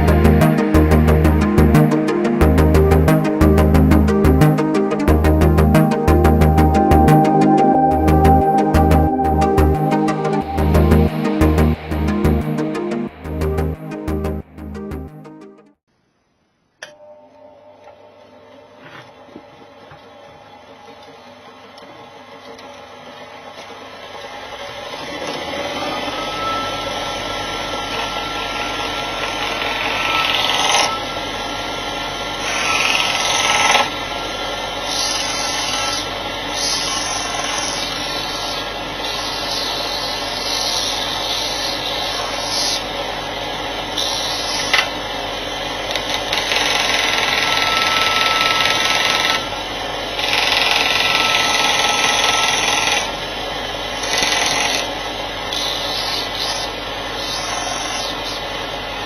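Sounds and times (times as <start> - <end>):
bench grinder running with whine: 21.2 - 59.0
workpiece rasping on abrasive: 34.8 - 42.9.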